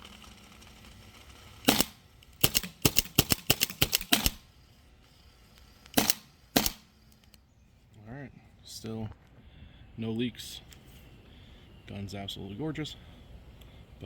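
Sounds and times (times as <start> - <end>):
paintball marker firing: 1.7 - 4.5, 5.9 - 6.9.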